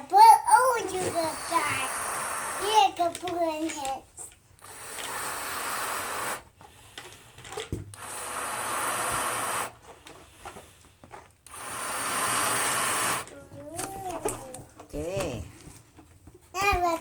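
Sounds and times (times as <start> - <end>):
balloons inflating with rushing air: 0.6 - 3.1, 4.6 - 14.2.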